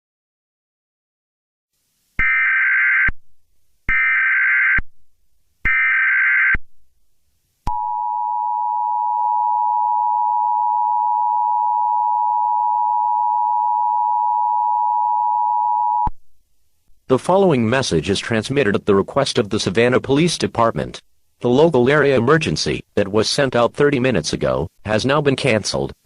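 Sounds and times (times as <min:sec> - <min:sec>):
two-tone alarm: 0:02.2 - 0:03.2, 0:03.9 - 0:04.8, 0:05.7 - 0:06.6, 0:07.7 - 0:16.1.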